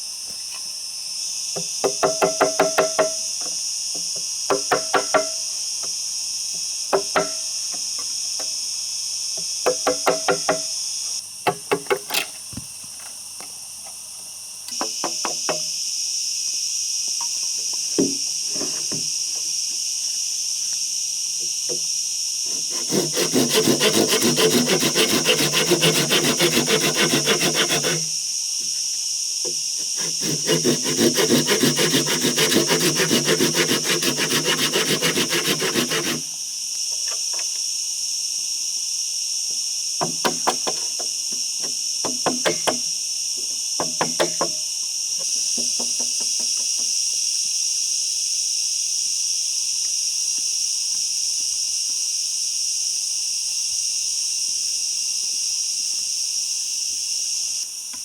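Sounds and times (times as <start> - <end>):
knocks on wood: 1.8 - 3.2, 6.9 - 7.4, 18.0 - 19.1, 43.8 - 44.6
saw cutting through wood: 22.5 - 28.1, 29.8 - 36.3.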